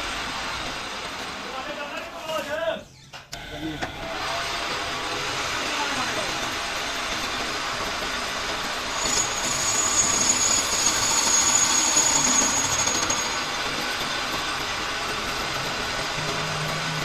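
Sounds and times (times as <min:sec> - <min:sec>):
lathe running with noisy hum: 0:00.0 - 0:02.7, 0:03.4 - 0:17.0
high steady squeal: 0:05.6 - 0:17.0.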